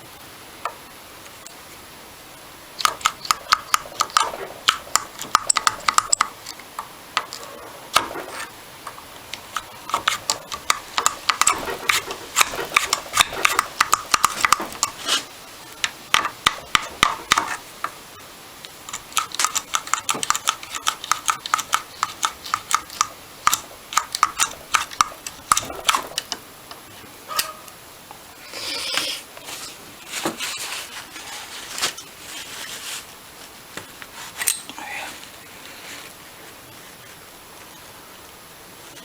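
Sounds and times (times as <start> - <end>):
metal parts clicking and clinking: 34.4 - 34.8.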